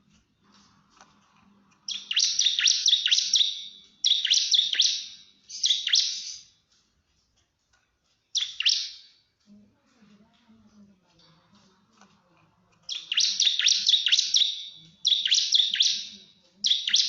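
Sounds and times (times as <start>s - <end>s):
bird singing rapid chirps: 1.9s - 6.5s, 8.3s - 9.2s, 12.9s - 17.0s.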